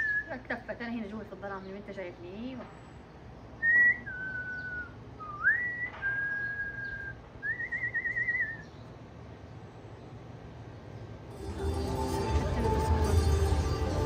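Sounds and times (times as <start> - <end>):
person whistling: 3.6 - 8.6.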